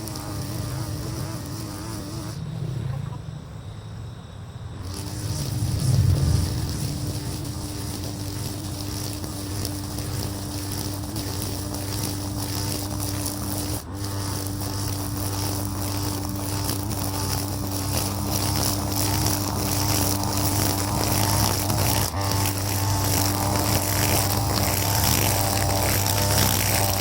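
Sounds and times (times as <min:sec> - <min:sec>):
brush cutter engine cutting grass: 0:00.0 - 0:02.4, 0:04.9 - 0:27.0.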